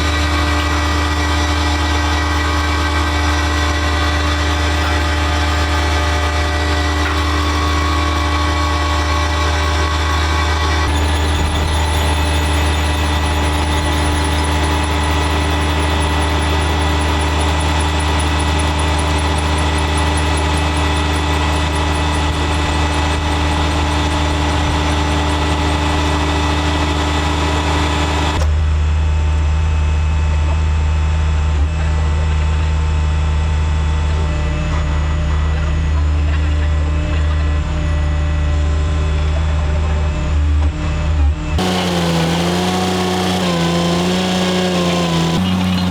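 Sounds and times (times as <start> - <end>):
high squeal: 0.0 - 28.4, 41.6 - 45.9
heavy machinery engine drone: 0.0 - 28.5, 41.6 - 45.9.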